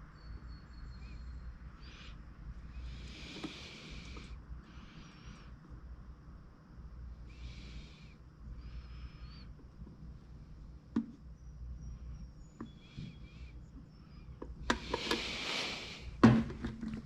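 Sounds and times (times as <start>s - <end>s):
tools and parts knocking: 14.4s - 15.2s
short hiss: 14.8s - 16.2s.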